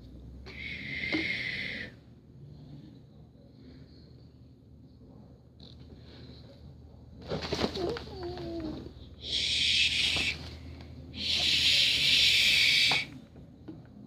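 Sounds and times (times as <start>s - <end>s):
cat hissing: 8.8s - 10.6s, 11.2s - 13.1s.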